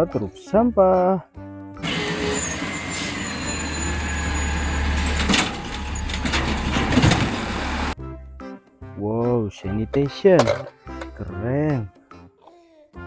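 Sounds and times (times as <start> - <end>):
garbage truck engine rumbling: 1.8 - 8.0
short metal clank: 1.8 - 8.0.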